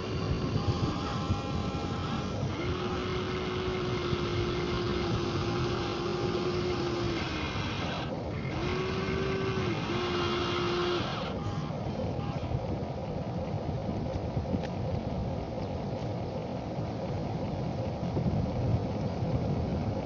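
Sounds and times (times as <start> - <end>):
small electric motor whining: 0.0 - 13.9
constant noisy background: 0.0 - 20.0.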